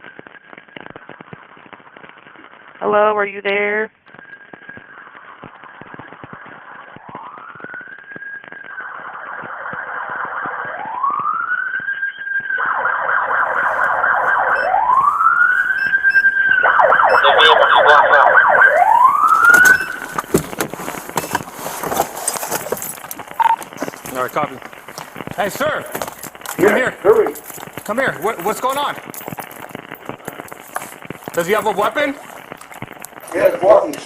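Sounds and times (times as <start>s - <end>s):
police car siren wailing and yelping: 8.8s - 20.5s.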